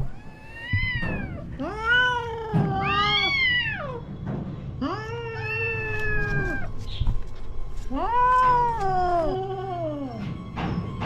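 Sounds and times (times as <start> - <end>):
cat yowling: 0.0 - 4.0, 4.8 - 6.8.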